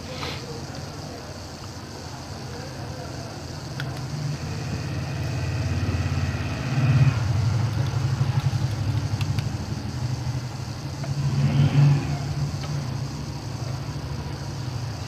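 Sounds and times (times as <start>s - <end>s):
engine throbbing: 3.8s - 15.0s.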